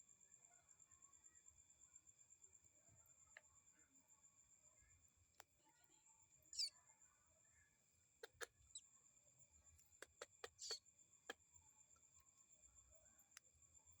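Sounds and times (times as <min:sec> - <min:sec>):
bird chick begging chirps: 0:08.2 - 0:08.8, 0:10.1 - 0:10.8
sharp clicks: 0:10.0 - 0:11.4.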